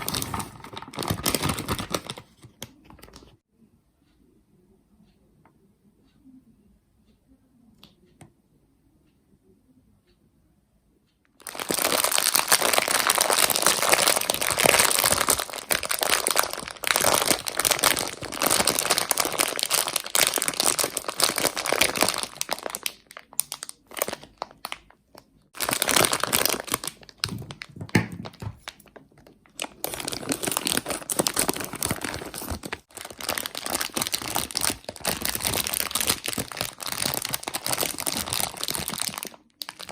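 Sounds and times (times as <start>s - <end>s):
plastic sweet bags crinkling: 0.0s - 3.3s, 11.4s - 39.9s.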